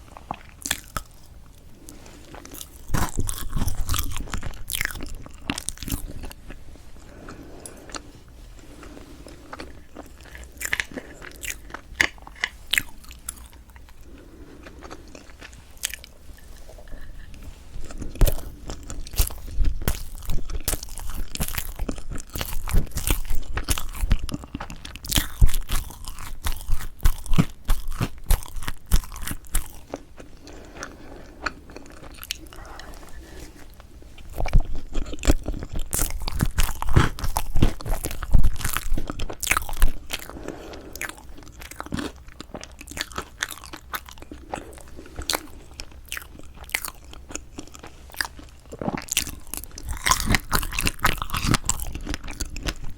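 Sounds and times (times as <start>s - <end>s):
biting and chewing cake: 0.0s - 52.9s.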